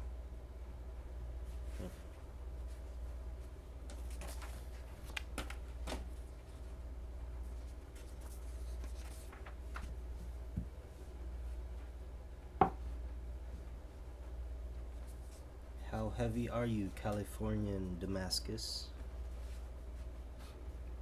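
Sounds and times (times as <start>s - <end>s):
steady low hum: 0.0s - 21.0s
dull knock on tabletop: 12.6s - 12.8s.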